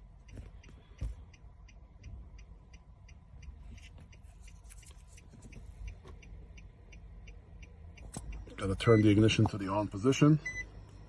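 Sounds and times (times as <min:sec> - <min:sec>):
hazard light flasher ticking: 0:00.0 - 0:08.8.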